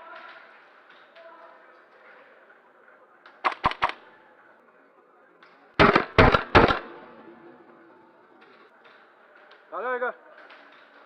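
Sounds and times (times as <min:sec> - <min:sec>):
airsoft guns firing: 0:03.4 - 0:04.1, 0:05.8 - 0:07.2.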